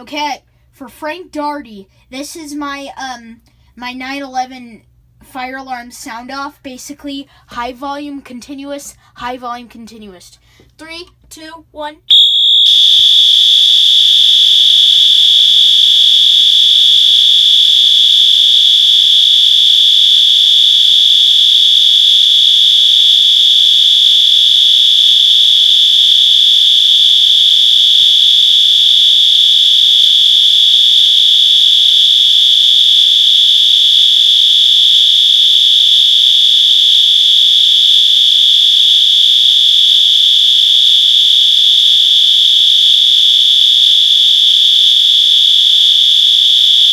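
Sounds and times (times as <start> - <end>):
fire alarm steady tone: 12.1 - 46.9.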